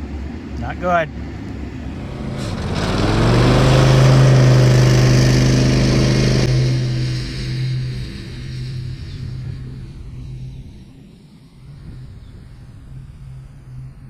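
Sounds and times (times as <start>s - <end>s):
engine revving: 1.5s - 10.5s.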